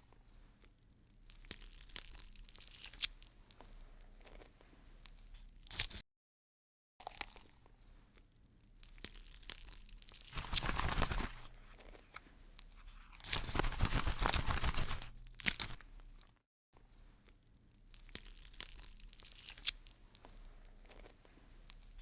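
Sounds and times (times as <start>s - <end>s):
chrysalis case crackling and tearing: 1.3s - 3.2s, 8.8s - 16.3s, 17.9s - 22.0s.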